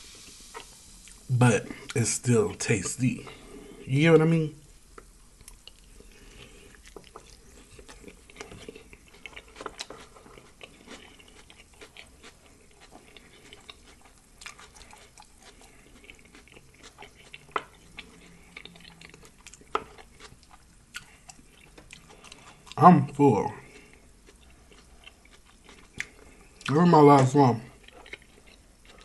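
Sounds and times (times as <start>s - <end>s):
chewing and mouth smacking: 5.0s - 22.8s, 23.7s - 29.0s.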